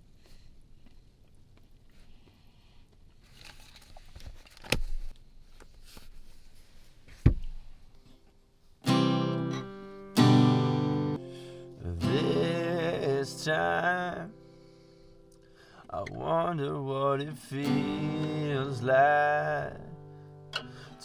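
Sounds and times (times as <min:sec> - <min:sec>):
strummed acoustic guitar: 0:08.8 - 0:16.6, 0:17.2 - 0:21.0.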